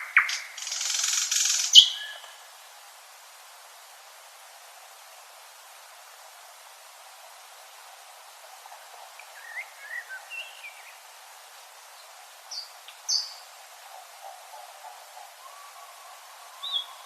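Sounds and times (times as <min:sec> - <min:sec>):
nightingale singing: 0:00.0 - 0:02.4, 0:09.2 - 0:11.1, 0:11.9 - 0:17.0
background hiss: 0:00.0 - 0:17.0.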